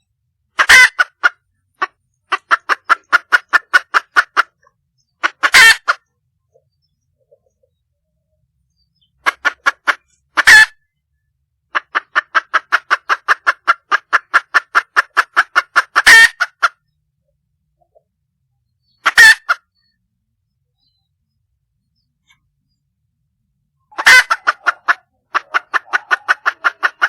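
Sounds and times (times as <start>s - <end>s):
hen squawking harshly: 0.6s - 1.1s, 5.2s - 6.0s, 23.9s - 27.0s
hen clucking: 0.6s - 8.1s, 8.7s - 11.0s, 11.6s - 17.0s, 17.7s - 20.0s, 23.8s - 27.0s.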